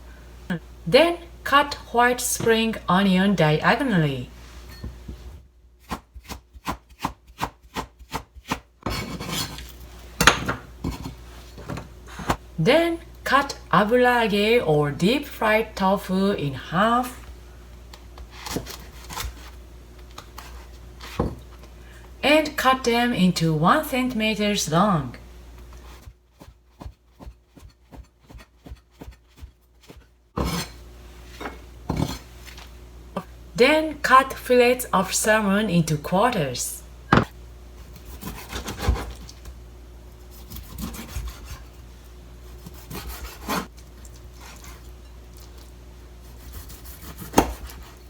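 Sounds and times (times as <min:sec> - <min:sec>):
knife slicing on cutting board: 0:05.8 - 0:11.1, 0:40.3 - 0:41.7, 0:42.6 - 0:43.7, 0:46.3 - 0:48.0
knife knocking on cutting board: 0:37.1 - 0:37.3.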